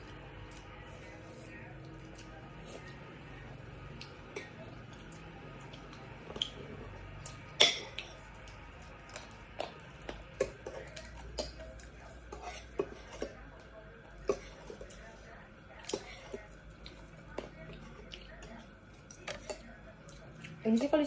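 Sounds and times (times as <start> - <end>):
utensils clinking against a bowl: 4.0 - 21.0.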